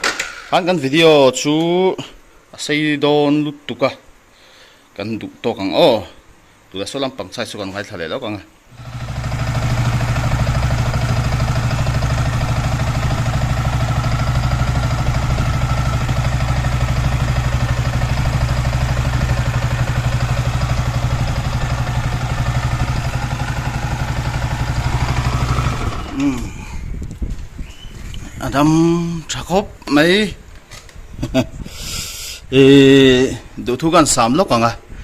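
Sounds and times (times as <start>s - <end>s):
motorcycle engine idling: 8.7s - 26.4s.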